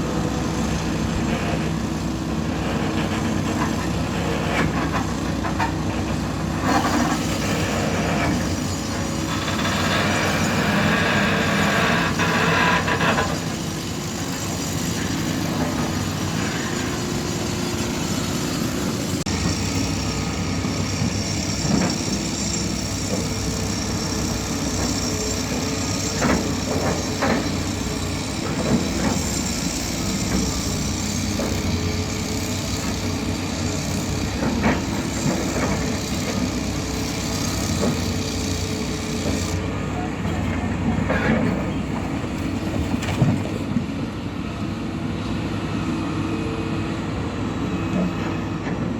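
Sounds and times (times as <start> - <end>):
excavator diesel engine running: 0.0 - 48.9.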